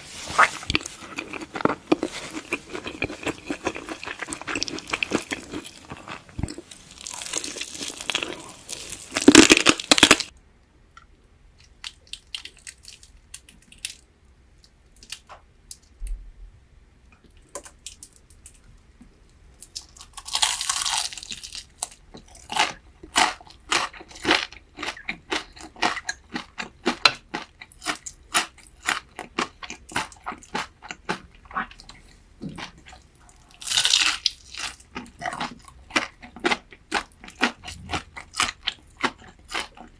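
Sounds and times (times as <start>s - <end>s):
crunchy food chewing: 0.3s - 10.3s, 19.6s - 39.9s.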